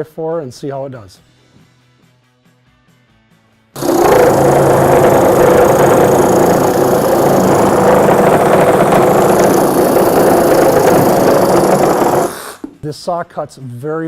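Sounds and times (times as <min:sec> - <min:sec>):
reciprocating saw cutting wood: 0:03.8 - 0:12.8.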